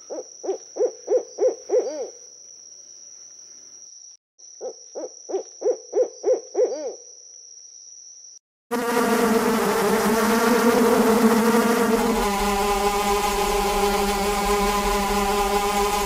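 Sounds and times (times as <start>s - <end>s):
loud droning noise with low hum: 8.7s - 16.0s
steady high whine: 8.7s - 16.0s.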